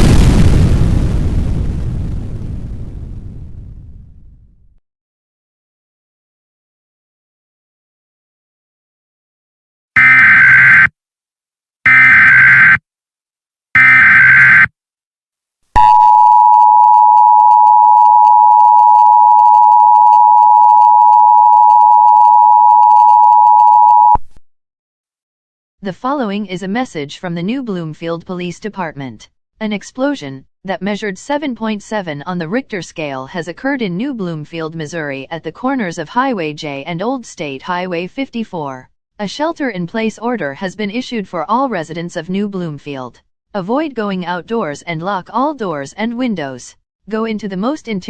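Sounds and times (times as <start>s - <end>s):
explosion low rumble: 0.0s - 4.7s
data tone bursts: 10.0s - 10.9s, 11.9s - 12.8s, 13.8s - 14.7s, 15.8s - 24.2s
two-tone attention signal: 10.0s - 10.9s, 11.9s - 12.8s, 13.8s - 14.7s, 15.8s - 24.2s.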